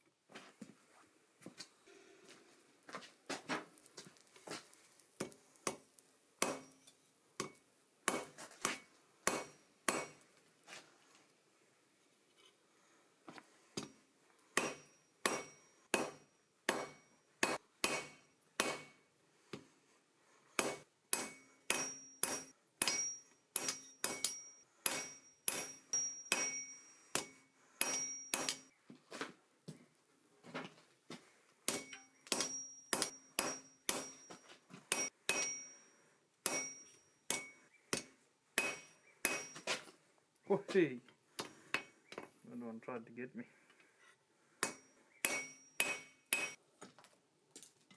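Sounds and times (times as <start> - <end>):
hammer striking steel on anvil: 6.4 - 10.2, 14.6 - 19.0, 20.6 - 28.7, 31.7 - 39.8, 44.6 - 46.6.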